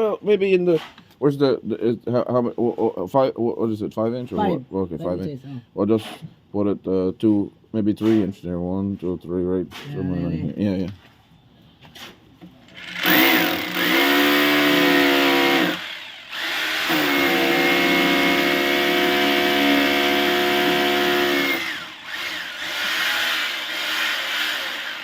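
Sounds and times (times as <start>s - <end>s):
rotary hammer drill whining: 12.7s - 25.0s.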